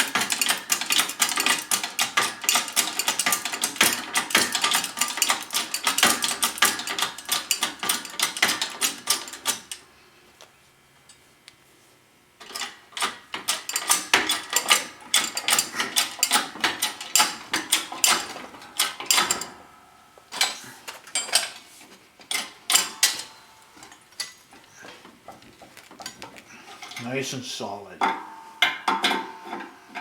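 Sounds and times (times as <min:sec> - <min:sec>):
hydraulic press clicking and clanking: 0:00.0 - 0:09.8, 0:12.4 - 0:21.6, 0:22.3 - 0:25.1.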